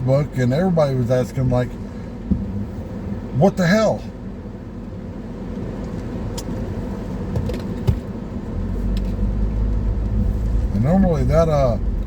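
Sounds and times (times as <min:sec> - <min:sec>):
car engine and tyre rumble: 0:00.0 - 0:12.0.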